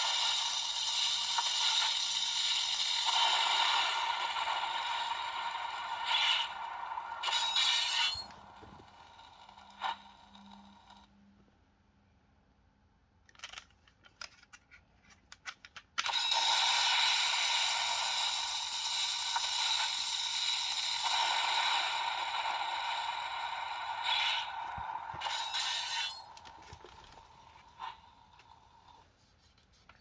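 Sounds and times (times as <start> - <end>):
toy electronic sound effect: 0.0 - 8.6, 16.1 - 26.5.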